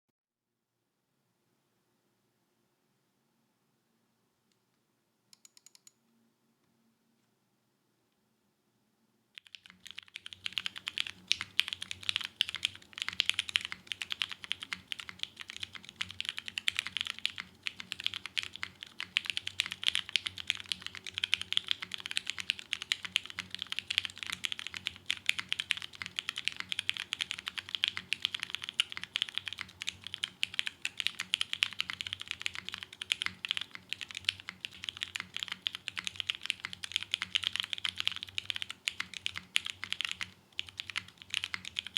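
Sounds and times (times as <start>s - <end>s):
mechanical keyboard typing: 5.4s - 6.0s, 9.4s - 41.9s.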